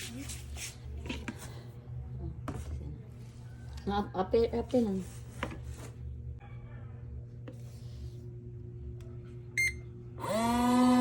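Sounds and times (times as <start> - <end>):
washing machine motor humming: 8.7 - 11.0.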